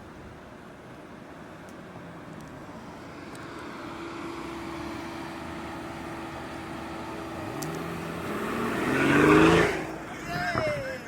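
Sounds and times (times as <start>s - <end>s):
car engines humming: 0.0s - 11.0s
car engine revving: 3.6s - 10.2s.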